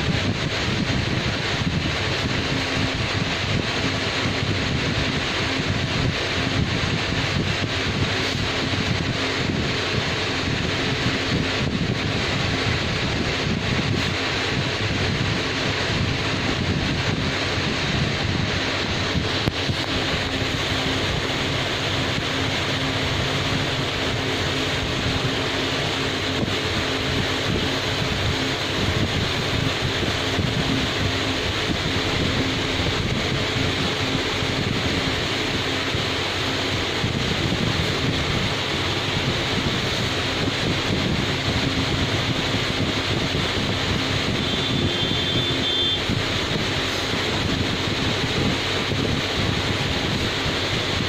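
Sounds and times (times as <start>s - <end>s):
road traffic rush: 0.0s - 51.0s
high-pitched tone: 44.3s - 46.1s.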